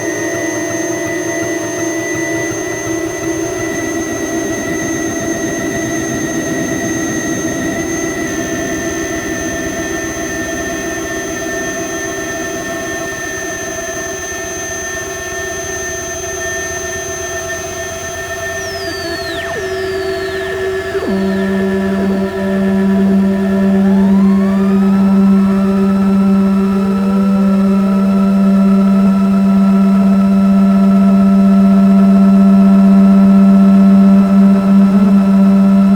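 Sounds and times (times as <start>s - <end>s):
high piercing synth tone: 0.0s - 27.6s
synthesizer drone: 0.0s - 31.7s
synth tones sweeping downward: 0.8s - 29.2s.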